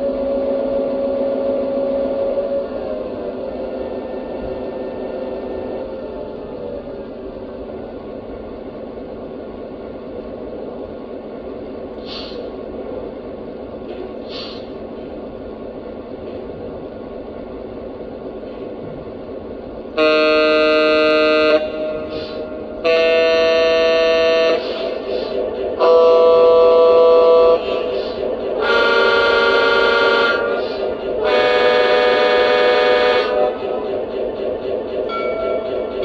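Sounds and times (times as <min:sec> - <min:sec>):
air hisses: 0:12.0 - 0:12.6, 0:14.2 - 0:14.9, 0:21.9 - 0:22.8, 0:24.5 - 0:25.9
air horn blasts: 0:20.0 - 0:24.8, 0:28.6 - 0:30.6, 0:31.2 - 0:33.5.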